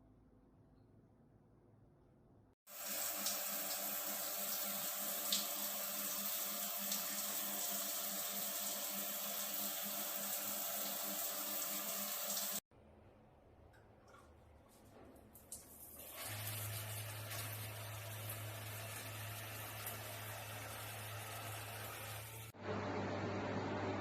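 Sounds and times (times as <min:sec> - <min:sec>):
water running from outlet: 0:02.7 - 0:12.6, 0:14.0 - 0:22.6.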